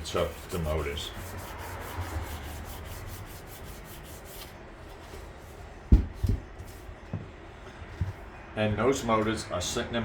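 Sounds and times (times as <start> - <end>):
hand rubbing on motor hood: 0.0 - 5.1.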